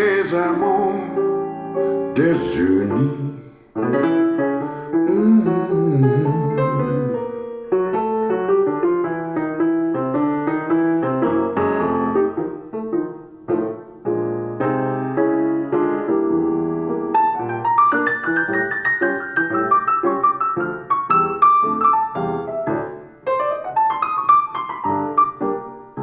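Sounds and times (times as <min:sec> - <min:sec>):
jazz piano solo: 0:00.0 - 0:26.0.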